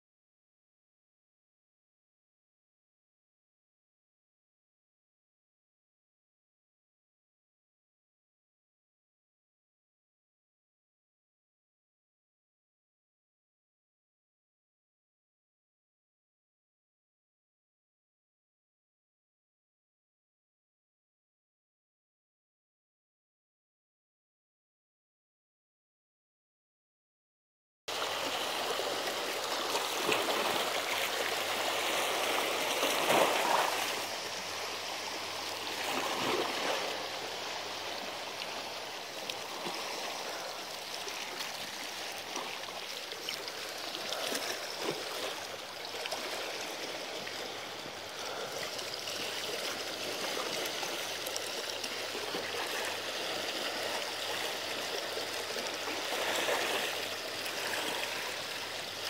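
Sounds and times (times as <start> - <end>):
seawater lapping against rocks: 27.9 - 59.0.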